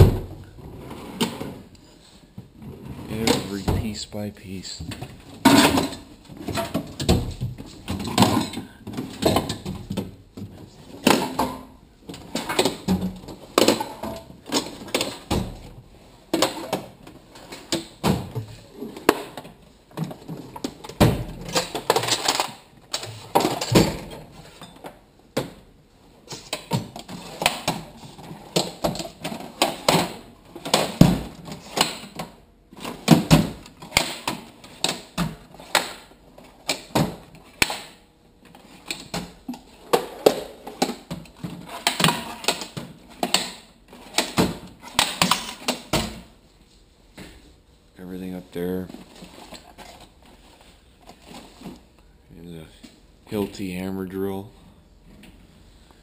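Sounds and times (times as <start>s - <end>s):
tools and drawers rattling: 4.8s - 46.3s, 48.8s - 51.9s.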